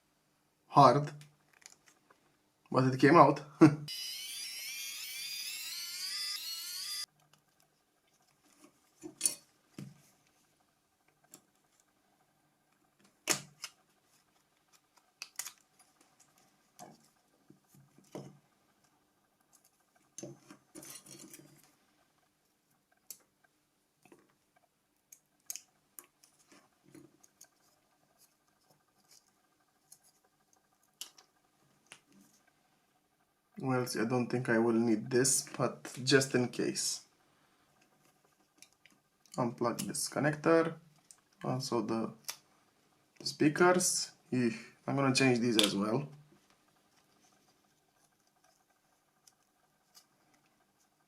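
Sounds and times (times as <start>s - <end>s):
plastic and metal parts clicking: 1.4s - 2.2s.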